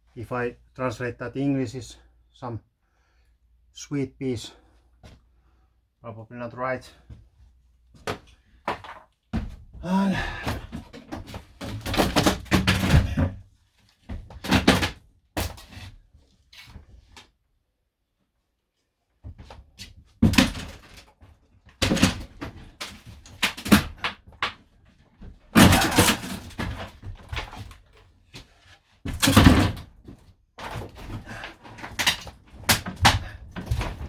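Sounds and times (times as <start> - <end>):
knocks and bangs from repair work: 10.2 - 13.4, 20.2 - 21.0, 21.8 - 24.6, 25.2 - 27.8, 29.1 - 34.0.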